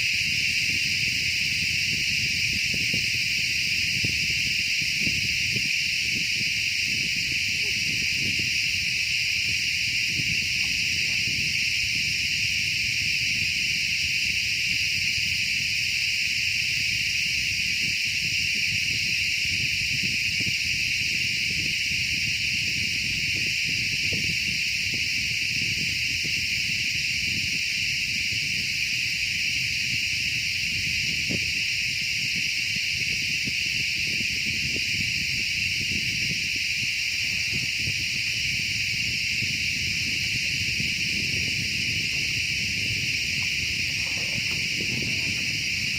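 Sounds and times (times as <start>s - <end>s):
insect chorus buzzing: 0.0s - 45.9s
low rustling: 39.4s - 45.9s.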